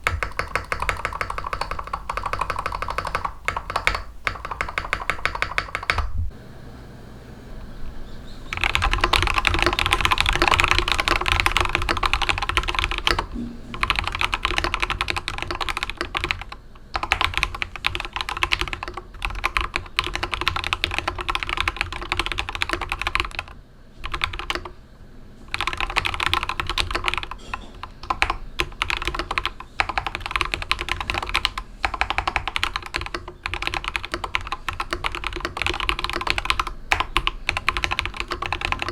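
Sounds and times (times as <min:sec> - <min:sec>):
mechanical keyboard typing: 0:00.0 - 0:06.1, 0:08.5 - 0:24.7, 0:25.5 - 0:38.9.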